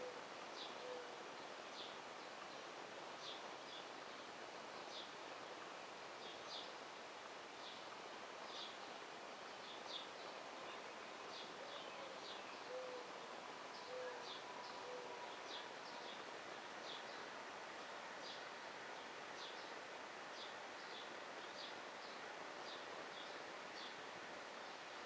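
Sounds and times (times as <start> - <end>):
dove cooing: 0.8 - 1.2, 11.6 - 13.1, 13.8 - 15.3.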